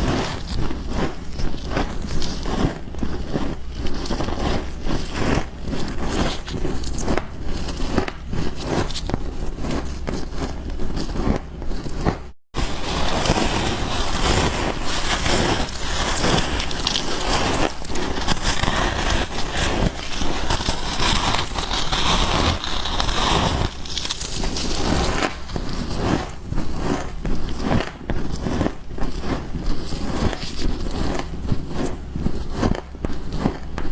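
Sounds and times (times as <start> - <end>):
chewing crunchy frost: 12.6 - 33.7.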